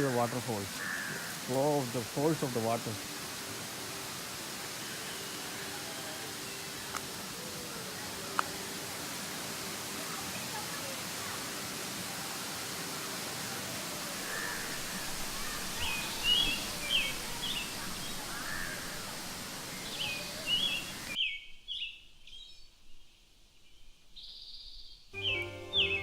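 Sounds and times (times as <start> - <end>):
small birds chirping: 0.0 - 11.6, 12.4 - 26.0.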